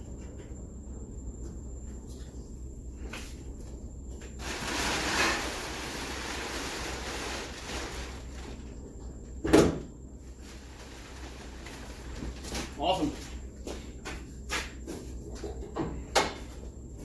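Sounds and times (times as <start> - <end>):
rustling handling noise: 4.3 - 8.8.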